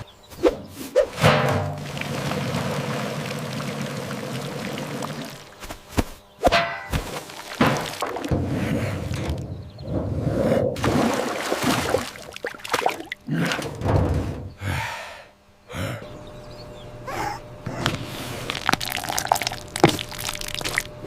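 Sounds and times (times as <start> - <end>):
cracks knocks and thuds: 5.6 - 10.1, 13.5 - 14.5.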